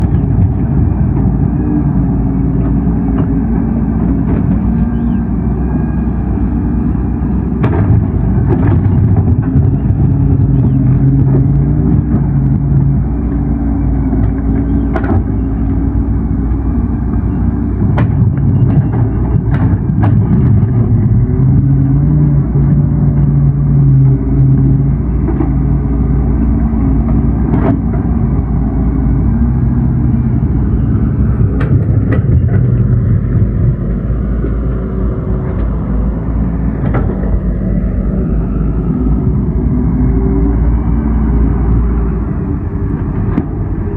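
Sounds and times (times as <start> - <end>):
excavator engine and hydraulics: 0.0 - 43.9.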